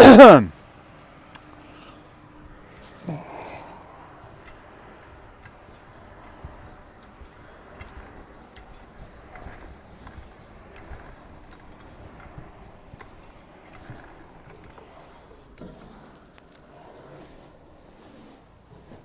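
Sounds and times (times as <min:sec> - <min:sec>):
handling clicks and rustles: 0:00.0 - 0:17.7
low steady background noise: 0:00.0 - 0:19.0.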